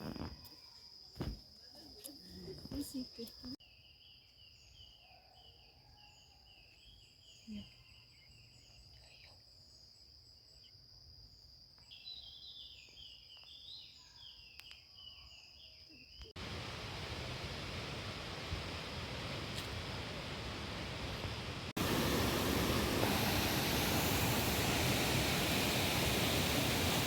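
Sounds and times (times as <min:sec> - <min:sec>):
insects trilling: 0:00.0 - 0:27.0
hiss of noise: 0:16.4 - 0:27.0.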